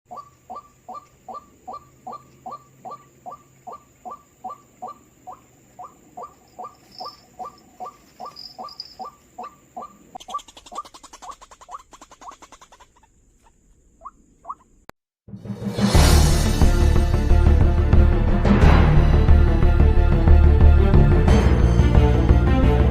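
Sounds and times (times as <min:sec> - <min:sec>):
waterhen calling: 0:00.1 - 0:14.8.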